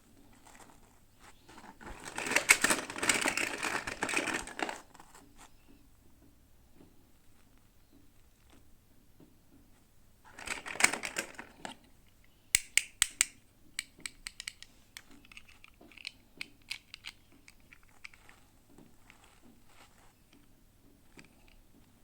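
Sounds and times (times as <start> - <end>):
small plastic pieces tapping: 1.5 - 4.9, 10.3 - 11.8, 12.6 - 20.5
packaging crinkling: 1.5 - 5.0, 10.3 - 11.8
sharp plastic clicks: 1.6 - 4.9, 10.3 - 18.4.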